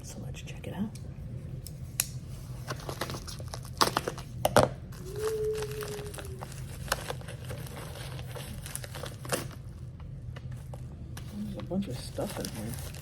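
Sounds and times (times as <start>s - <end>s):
packaging crinkling and rustling: 2.3s - 13.0s
packaging ripping: 2.7s - 9.8s, 12.1s - 13.0s.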